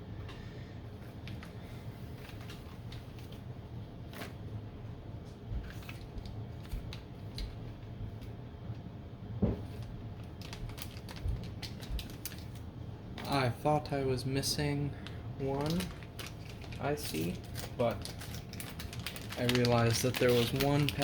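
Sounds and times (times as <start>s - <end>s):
steady low hum: 0.0s - 21.0s
knock on workbench: 9.4s - 9.6s.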